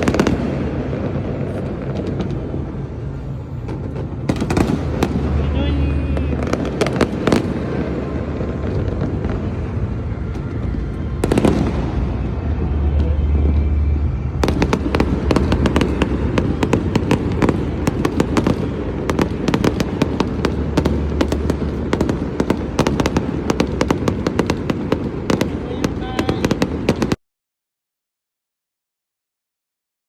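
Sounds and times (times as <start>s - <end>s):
fireworks booming: 0.0s - 27.2s
rapid firework crackle: 0.0s - 27.2s
loud firework bang: 3.6s - 27.2s.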